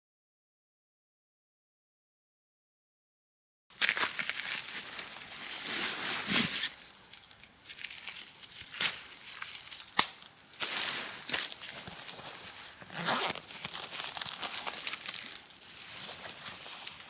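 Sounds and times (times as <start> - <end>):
insects chirping: 3.7 - 17.0
rustling: 3.8 - 17.0.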